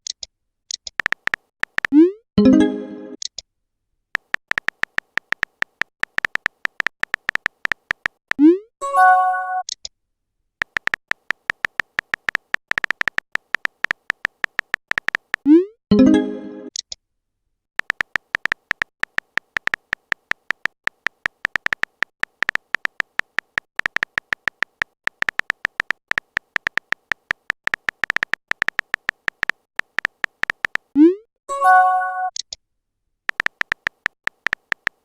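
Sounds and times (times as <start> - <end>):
phone keyboard typing clicks: 0.0 - 2.1, 4.2 - 8.4, 10.6 - 15.5, 17.8 - 31.0, 33.3 - 35.0.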